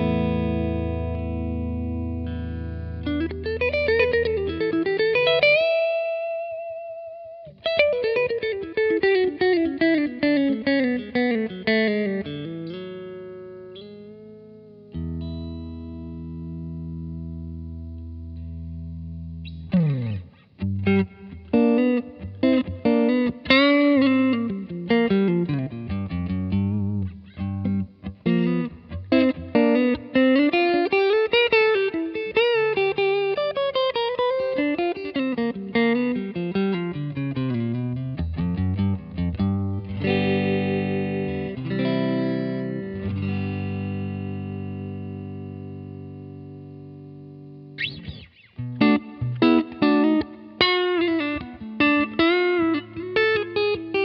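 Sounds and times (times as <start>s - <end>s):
electric guitar with reverb: 0.0s - 54.0s.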